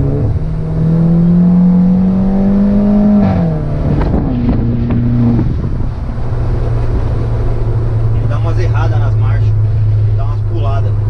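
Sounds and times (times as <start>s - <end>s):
car engine accelerating: 0.0s - 11.0s.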